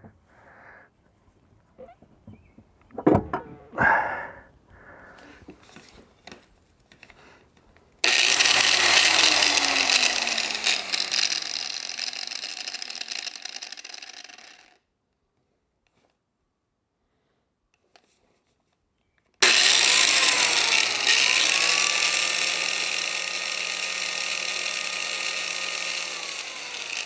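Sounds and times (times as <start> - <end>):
angle grinder grinding steel: 8.0 - 14.7, 19.4 - 27.0.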